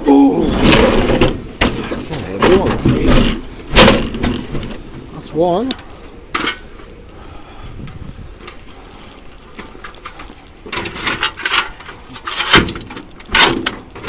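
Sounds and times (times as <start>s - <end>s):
low steady hum: 0.0s - 14.0s
washing machine metal clattering: 8.6s - 14.0s.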